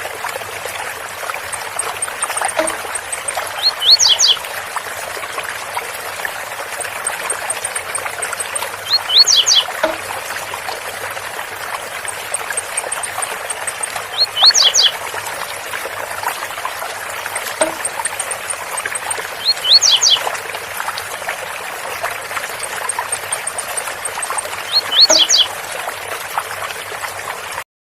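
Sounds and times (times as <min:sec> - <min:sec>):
faint high ticks: 0:01.4 - 0:04.4, 0:06.6 - 0:10.5, 0:11.6 - 0:15.0, 0:17.2 - 0:20.3.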